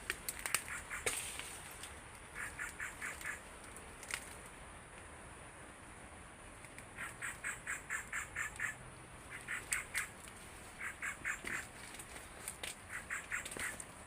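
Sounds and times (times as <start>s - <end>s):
rapid quack-like animal calls: 0.5s - 1.1s, 2.3s - 3.4s, 7.0s - 10.2s, 10.8s - 11.8s, 12.8s - 13.8s.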